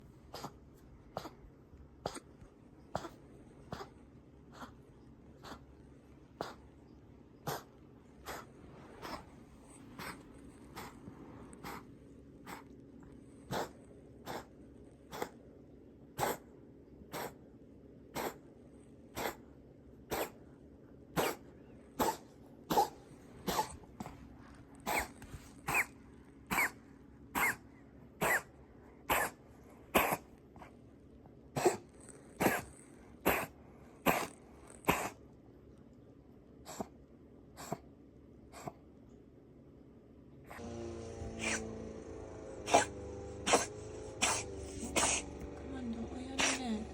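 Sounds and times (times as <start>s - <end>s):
cat coughing: 0.3s - 4.7s, 7.4s - 9.2s, 13.5s - 14.5s, 16.2s - 16.5s, 18.1s - 18.4s, 19.1s - 19.4s, 20.1s - 20.4s, 21.2s - 21.4s, 22.0s - 24.0s, 24.8s - 30.3s, 31.5s - 35.2s, 42.7s - 45.3s.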